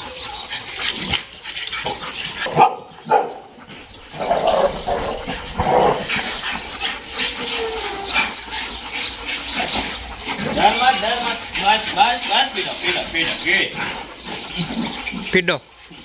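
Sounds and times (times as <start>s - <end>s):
dog barking: 2.4s - 3.5s.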